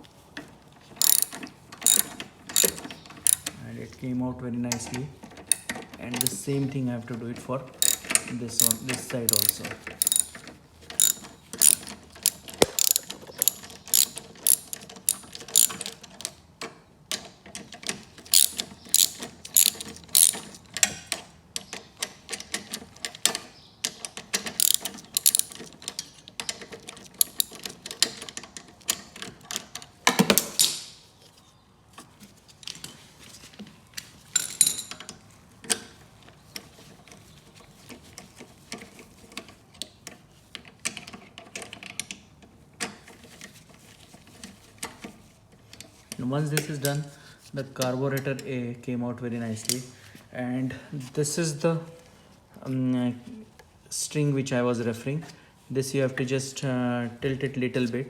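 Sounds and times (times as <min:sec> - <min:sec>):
metal clatter: 0:01.0 - 0:03.5, 0:07.8 - 0:16.0, 0:18.3 - 0:20.6, 0:24.6 - 0:25.7, 0:27.2 - 0:27.7
ratchet wrench clicking: 0:01.0 - 0:03.6, 0:05.5 - 0:06.4, 0:07.8 - 0:16.0, 0:18.3 - 0:20.6, 0:24.6 - 0:25.7, 0:27.2 - 0:27.6, 0:34.4 - 0:34.9.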